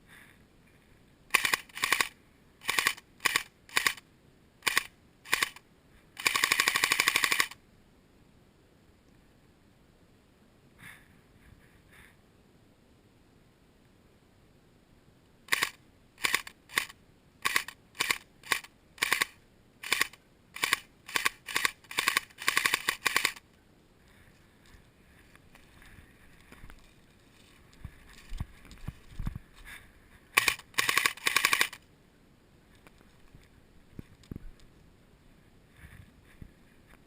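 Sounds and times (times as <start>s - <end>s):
airsoft guns firing: 6.2s - 7.6s.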